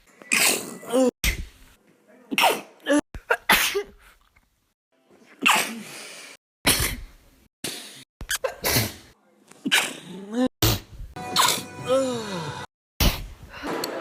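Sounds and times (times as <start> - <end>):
person sneezing: 2.3 - 4.0, 5.4 - 6.1, 6.7 - 12.4.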